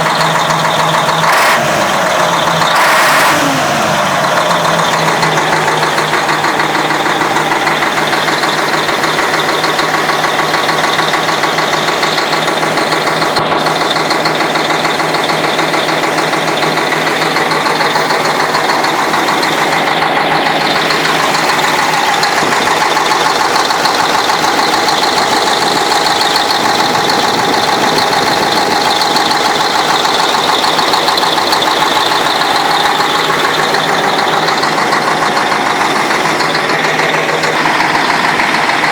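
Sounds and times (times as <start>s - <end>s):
diesel engine idling: 0.0s - 38.9s
engine knock: 0.0s - 38.9s.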